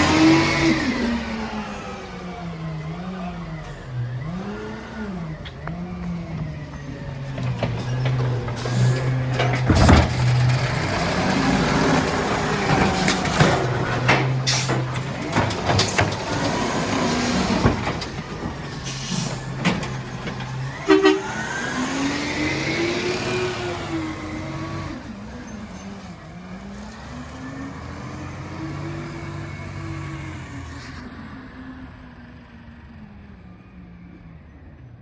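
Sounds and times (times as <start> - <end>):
truck engine running: 0.0 - 29.8
bangs and clatter: 6.9 - 21.4.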